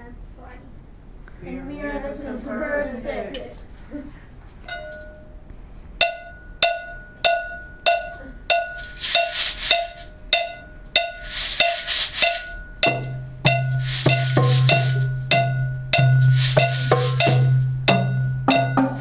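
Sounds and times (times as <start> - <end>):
percussion rattling: 4.6 - 5.3, 6.0 - 19.0
ringing struck instrument beat: 4.6 - 5.4, 6.0 - 19.0
low drum: 12.8 - 19.0.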